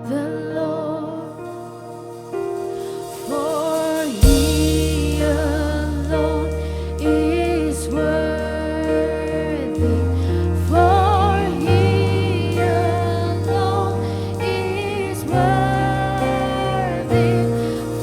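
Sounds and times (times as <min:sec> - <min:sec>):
person singing with vibrato: 0:00.0 - 0:18.0
sustained chords: 0:00.0 - 0:18.0
bass line: 0:04.0 - 0:18.0.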